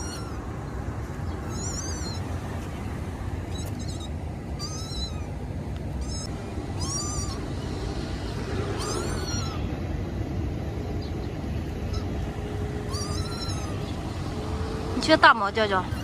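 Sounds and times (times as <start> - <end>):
cat meowing: 0.0 - 0.4, 1.4 - 2.3, 3.5 - 9.8, 12.8 - 14.0
steady low rumble: 0.0 - 16.0.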